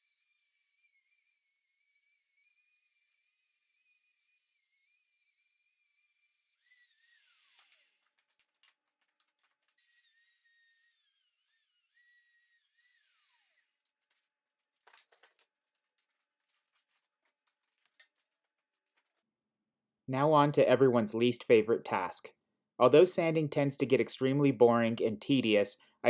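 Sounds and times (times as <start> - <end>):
small power tool motor whine: 0.0 - 8.0, 9.8 - 13.8.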